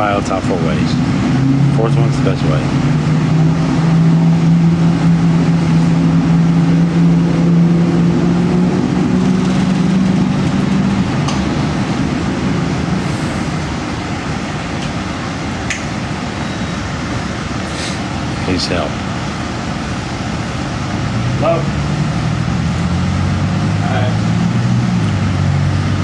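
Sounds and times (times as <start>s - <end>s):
traffic rumble: 0.0s - 26.0s
vehicle engine humming: 0.0s - 26.0s.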